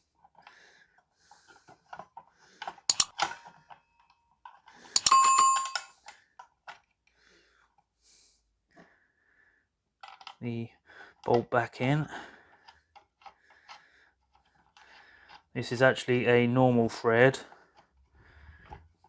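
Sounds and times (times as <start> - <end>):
metal parts clinking and knocking: 2.9 - 3.8, 4.9 - 5.9.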